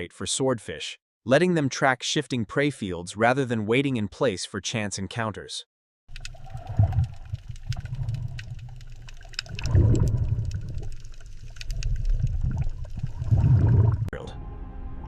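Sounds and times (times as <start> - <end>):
small clicks and bubbling: 6.1 - 14.1
low underwater water sound: 6.1 - 14.3.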